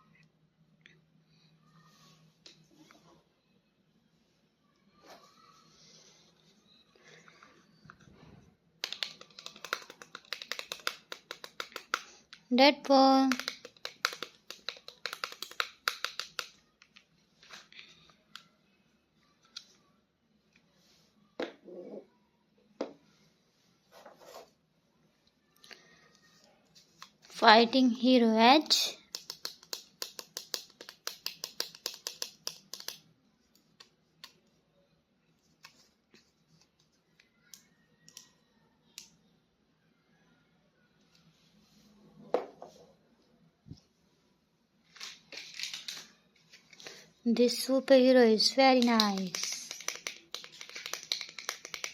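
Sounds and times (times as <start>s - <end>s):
plastic toy clicking: 8.8s - 12.4s, 13.2s - 17.0s, 29.0s - 33.1s, 48.6s - 51.9s.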